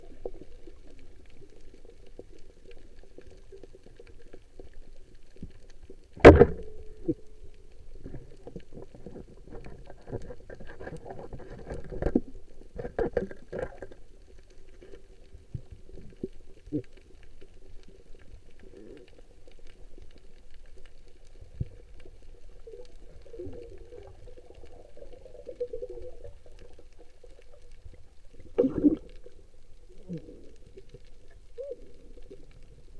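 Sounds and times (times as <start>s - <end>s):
water sloshing and gurgling: 7.8s - 20.1s, 21.3s - 32.9s.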